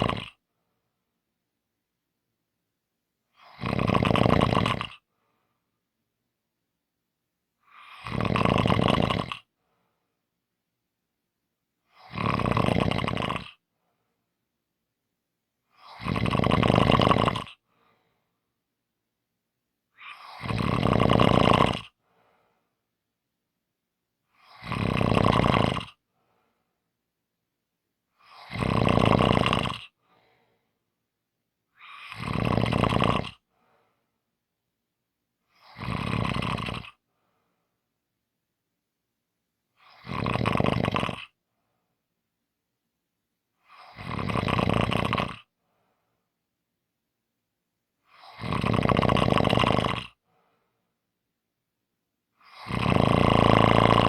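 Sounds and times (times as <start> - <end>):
person snoring: 0.0 - 0.4, 3.3 - 5.1, 7.6 - 9.5, 11.8 - 13.6, 15.7 - 18.0, 20.0 - 22.0, 24.3 - 26.0, 28.1 - 30.6, 31.8 - 33.5, 35.5 - 37.0, 39.8 - 41.4, 43.6 - 45.5, 48.1 - 50.2, 52.4 - 54.0
faint breath: 5.1 - 5.8, 9.5 - 10.3, 17.6 - 18.6, 21.9 - 22.9, 26.1 - 26.9, 29.9 - 31.0, 33.4 - 34.3, 37.0 - 37.9, 45.6 - 46.4, 50.2 - 51.0.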